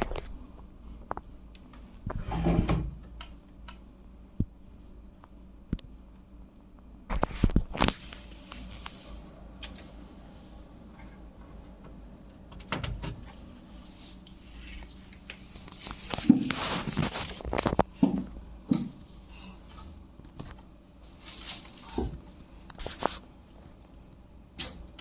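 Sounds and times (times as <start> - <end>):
rustling: 13.8 - 17.9, 21.0 - 23.3.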